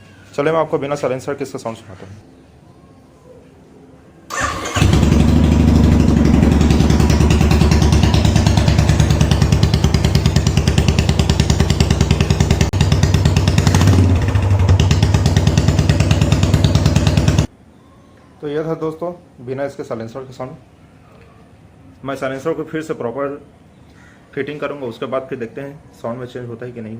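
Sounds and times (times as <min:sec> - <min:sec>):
motorcycle engine idling open exhaust: 0:04.8 - 0:17.5.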